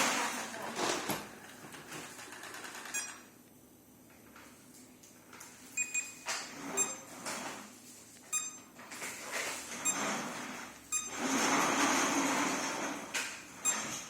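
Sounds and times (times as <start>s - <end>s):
rustling or whirring: 9.0s - 14.0s.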